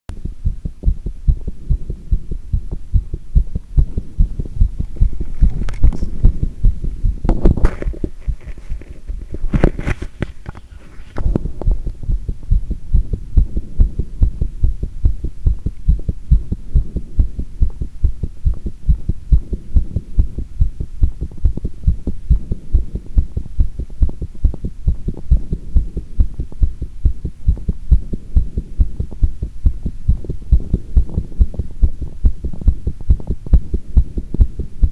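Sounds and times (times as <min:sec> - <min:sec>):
heartbeat thuds: 0:00.1 - 0:10.4, 0:11.1 - 0:34.9
scraping noises: 0:07.3 - 0:11.7.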